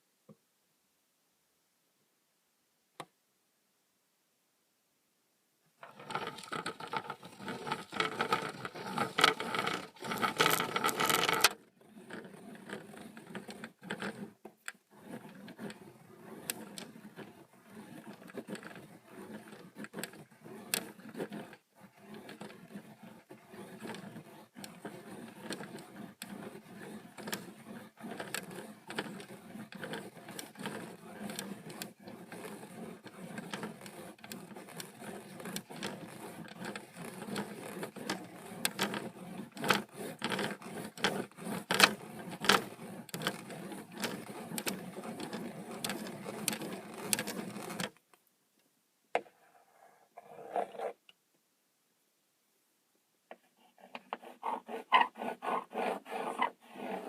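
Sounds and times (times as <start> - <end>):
rapid clicks and scratches: 5.8 - 48.0, 53.6 - 57.0.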